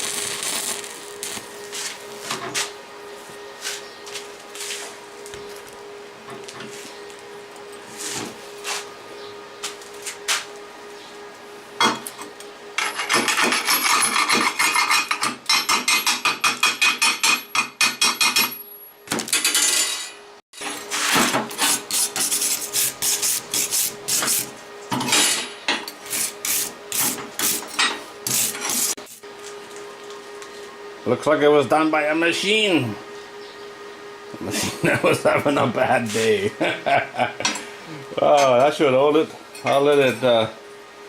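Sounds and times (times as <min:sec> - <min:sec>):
hand tool scraping steel: 0:12.8 - 0:16.1, 0:19.6 - 0:24.5, 0:25.9 - 0:29.2.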